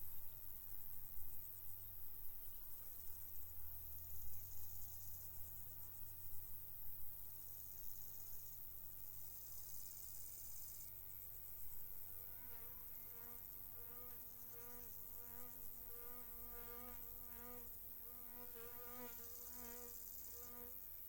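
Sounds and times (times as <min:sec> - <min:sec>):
flying insect buzzing: 0:12.2 - 0:20.8.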